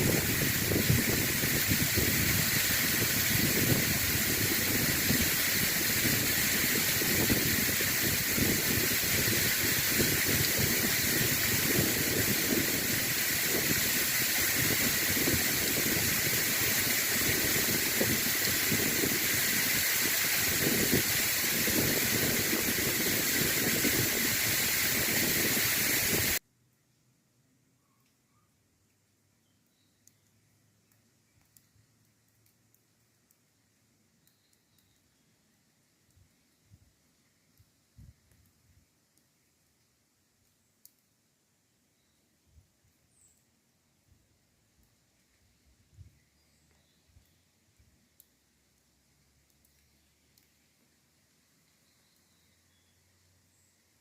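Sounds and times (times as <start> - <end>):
waterfall roaring: 0.0 - 26.4.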